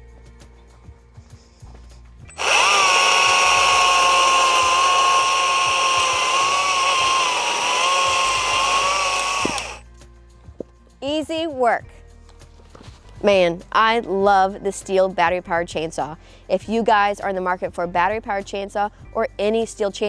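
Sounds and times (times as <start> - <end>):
chainsaw whining cutting log: 2.3 - 9.8.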